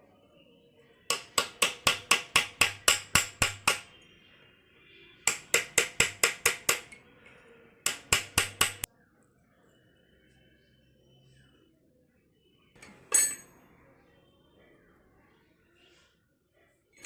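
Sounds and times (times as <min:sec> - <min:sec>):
hammer striking metal: 0:01.1 - 0:03.9, 0:05.3 - 0:07.0, 0:07.9 - 0:08.9.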